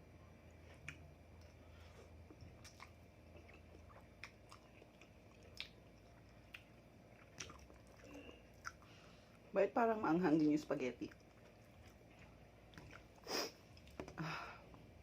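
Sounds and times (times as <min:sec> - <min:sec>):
person chewing: 0:00.6 - 0:09.4, 0:11.1 - 0:14.2
mouth clicks and smacks: 0:05.3 - 0:08.8.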